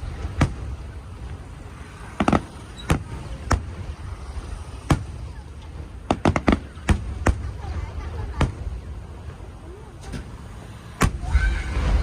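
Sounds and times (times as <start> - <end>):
fireworks bursting: 0.0 - 9.0.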